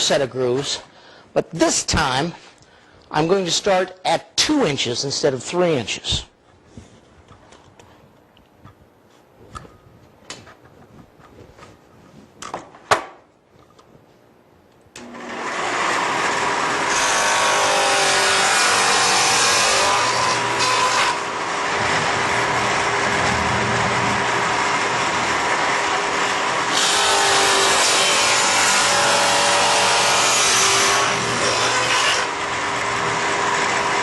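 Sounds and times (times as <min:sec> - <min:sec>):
table saw running: 0:15.0 - 0:34.0.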